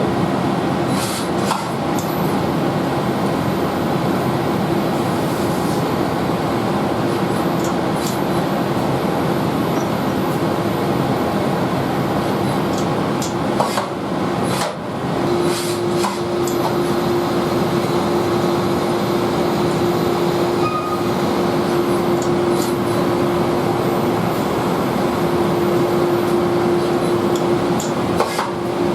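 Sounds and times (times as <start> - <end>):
machine humming: 15.1 - 28.9.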